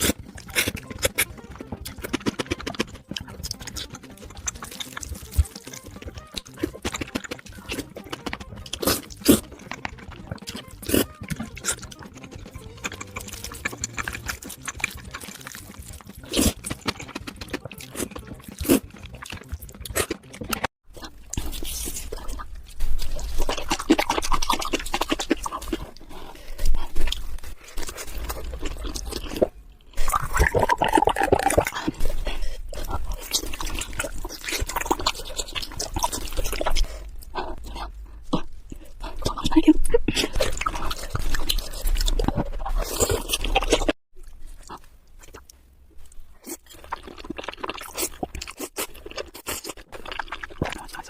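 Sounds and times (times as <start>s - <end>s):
slurping: 0.0s - 45.5s
wet chewing: 0.0s - 51.0s.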